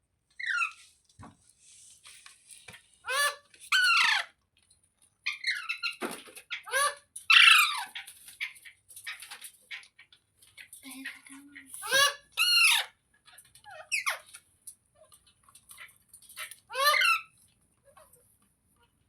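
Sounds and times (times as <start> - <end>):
parakeet squawking and chattering: 0.4 - 0.8, 3.0 - 4.3, 5.2 - 10.0, 11.8 - 13.0, 13.7 - 14.3, 15.8 - 17.4.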